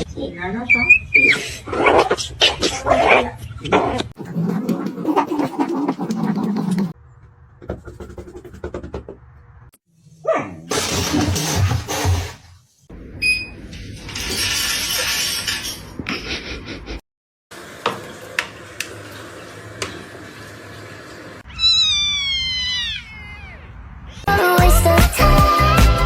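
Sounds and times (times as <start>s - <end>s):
cat meowing: 21.4s - 24.3s.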